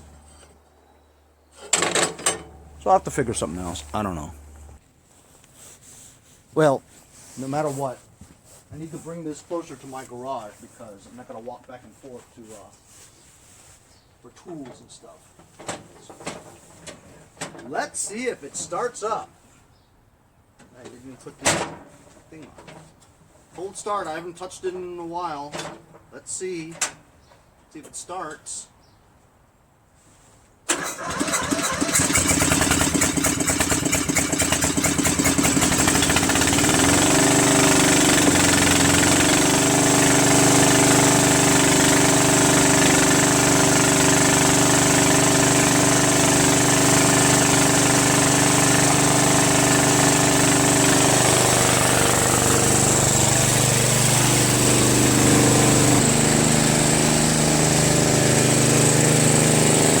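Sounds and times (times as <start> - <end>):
lawn tractor engine running: 1.6 - 4.8, 30.7 - 60.0.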